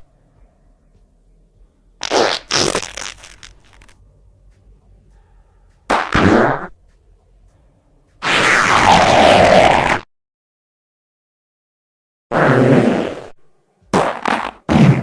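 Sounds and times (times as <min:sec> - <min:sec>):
farts: 0:02.0 - 0:03.9, 0:05.9 - 0:06.8, 0:08.2 - 0:10.1, 0:12.3 - 0:15.0.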